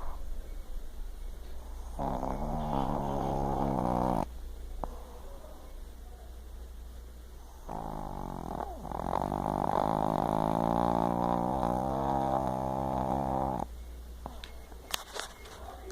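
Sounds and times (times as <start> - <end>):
long pitched snore: 1.9 - 4.3, 7.6 - 13.7.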